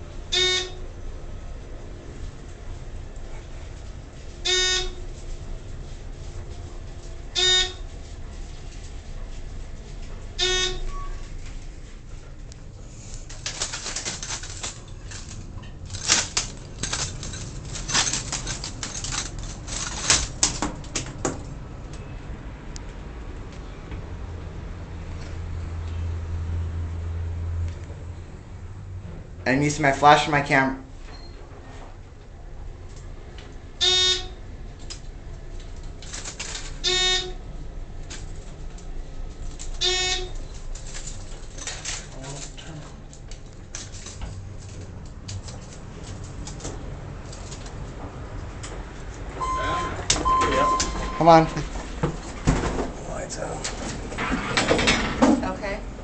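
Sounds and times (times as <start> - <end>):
elevator low hum: 0.0 - 56.0
elevator electronic beep: 0.3 - 0.9, 4.4 - 5.2, 7.3 - 8.0, 10.4 - 11.3, 33.8 - 34.4, 36.8 - 37.4, 39.8 - 40.4, 49.4 - 51.7.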